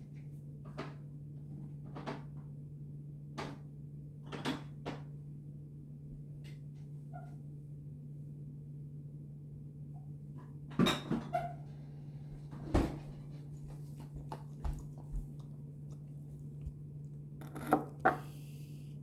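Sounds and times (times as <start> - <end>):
steady low hum: 11.6 - 19.0.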